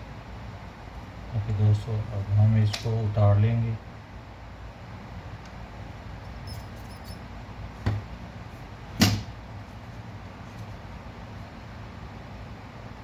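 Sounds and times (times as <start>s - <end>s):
low steady hum: 0.0s - 13.0s
sharp knocks: 9.0s - 9.3s.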